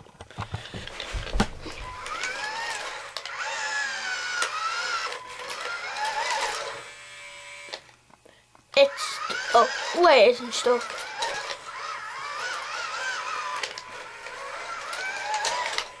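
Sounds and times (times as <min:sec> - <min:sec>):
knocks and thumps: 0:00.0 - 0:02.3
toy car motor whirring: 0:00.4 - 0:07.9, 0:08.7 - 0:16.0.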